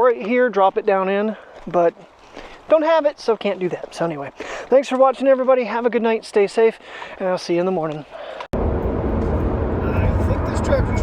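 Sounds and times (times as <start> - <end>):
car road noise: 8.6 - 11.0.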